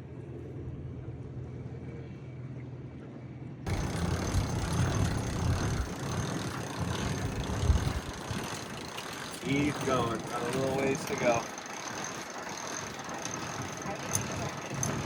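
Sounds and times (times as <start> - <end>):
wind buffeting microphone: 3.7 - 11.0
boat engine droning: 3.7 - 15.0.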